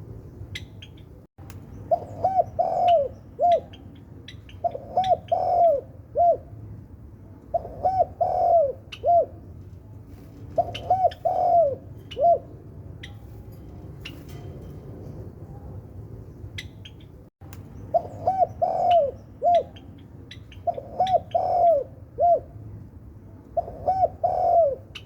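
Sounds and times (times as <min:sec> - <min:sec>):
dove cooing: 0:01.9 - 0:06.6, 0:07.5 - 0:09.5, 0:10.4 - 0:13.4, 0:17.9 - 0:22.6, 0:23.6 - 0:25.0.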